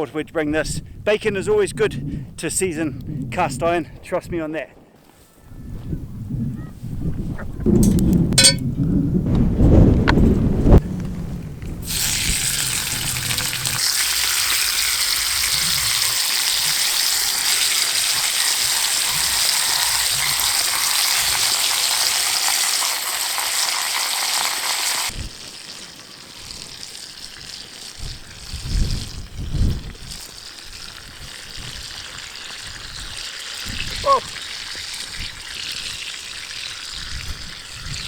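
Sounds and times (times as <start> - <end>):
bacon sizzling in a pan: 11.8 - 38.0.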